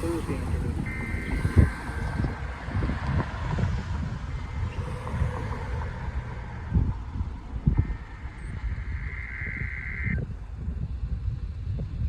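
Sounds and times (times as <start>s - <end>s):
faint steady radio tone: 0.0s - 2.5s
street traffic: 0.0s - 12.0s
wind on microphone: 0.0s - 12.0s.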